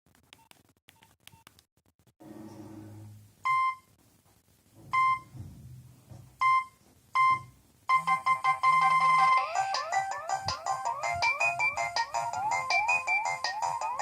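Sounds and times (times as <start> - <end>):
polyphonic ringtone: 7.2 - 14.0.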